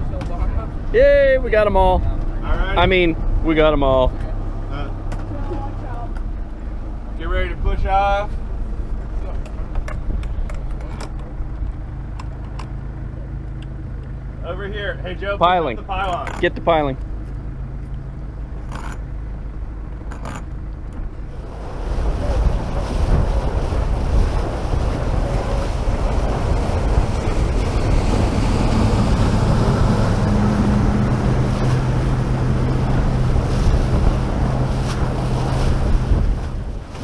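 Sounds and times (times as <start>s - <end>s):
boat engine humming: 0.0s - 37.0s
water noise: 0.0s - 37.0s
wind on microphone: 21.0s - 37.0s.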